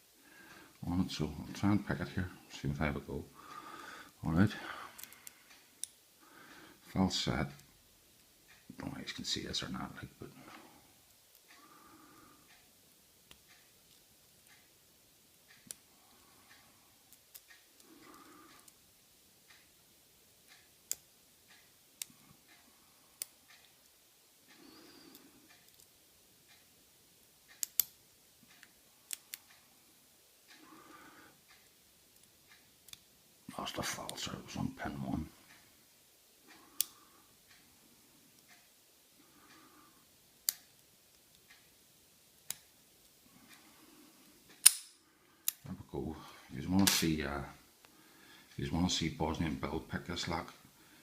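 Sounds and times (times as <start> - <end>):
faint ticks of lock pick: 20.4 - 26.7, 27.5 - 29.7, 30.4 - 33.1, 36.4 - 37.8, 42.4 - 45.7
sharp lock clicks: 44.6 - 44.9.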